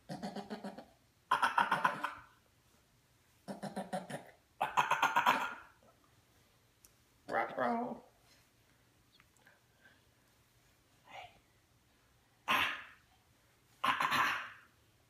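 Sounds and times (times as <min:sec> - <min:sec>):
hoarse hacking cough: 0:04.2 - 0:05.8, 0:13.8 - 0:14.7.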